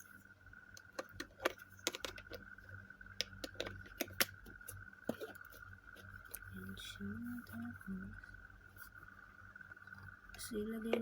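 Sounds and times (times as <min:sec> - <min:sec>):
plastic parts clicking: 0:00.8 - 0:02.4.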